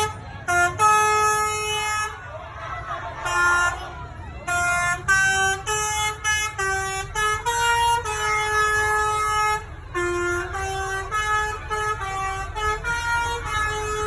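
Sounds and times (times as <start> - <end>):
musical air horn tune: 4.4 - 14.0.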